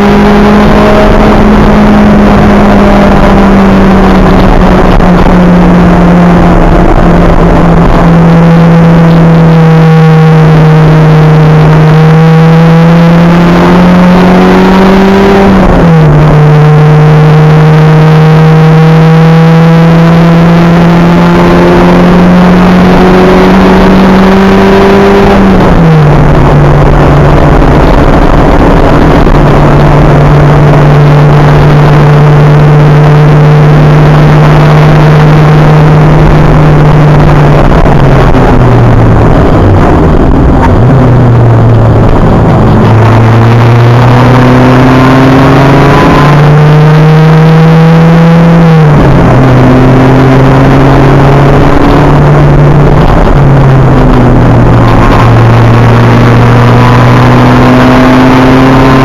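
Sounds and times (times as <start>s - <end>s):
race car engine accelerating: 0.0s - 59.0s
road and wind noise: 0.0s - 59.0s.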